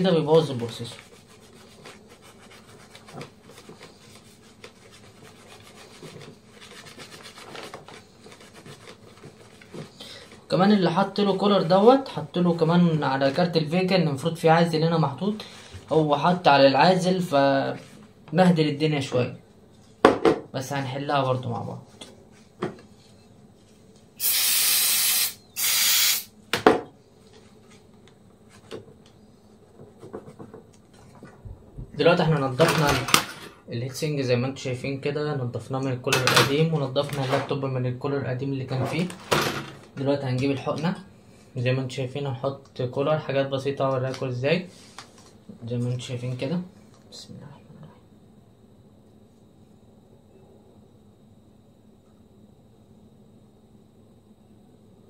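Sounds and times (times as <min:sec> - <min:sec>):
tissue scrubbing strokes: 0:00.8 - 0:09.6
aerosol can spraying: 0:24.2 - 0:26.3.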